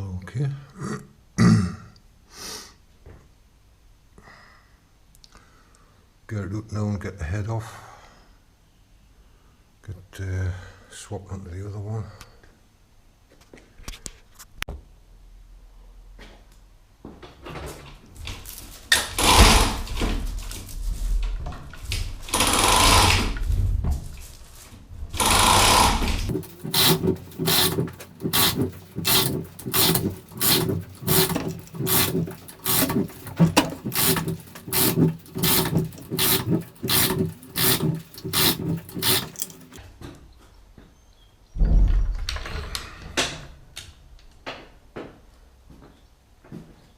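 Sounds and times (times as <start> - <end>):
power tool running: 25.2 - 39.8
rhythmic pulsing: 26.3 - 39.8.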